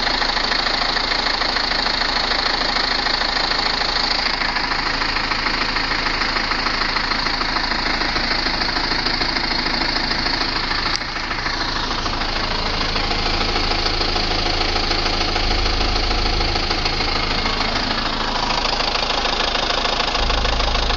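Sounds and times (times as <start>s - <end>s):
diesel engine with knocking rattle: 0.0s - 20.9s.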